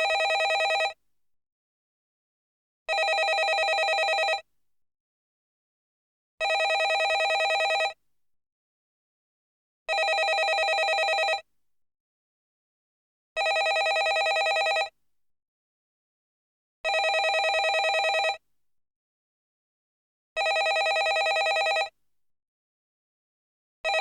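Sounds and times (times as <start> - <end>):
landline telephone bell ringing: 0.0 - 1.0, 2.9 - 4.4, 6.4 - 8.0, 9.9 - 11.4, 13.4 - 14.9, 16.9 - 18.4, 20.4 - 21.9.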